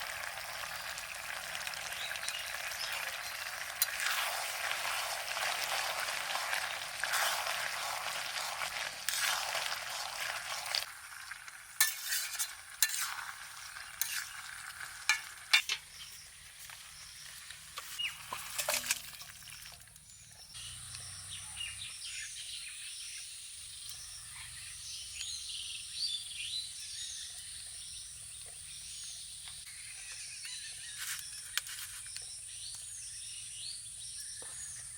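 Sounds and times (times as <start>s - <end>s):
birds chirping: 0.0s - 10.8s, 13.3s - 34.9s
curry sizzling in a pan: 0.0s - 19.8s
spoon scraping a pan: 2.7s - 10.9s, 11.7s - 16.2s, 17.8s - 19.2s.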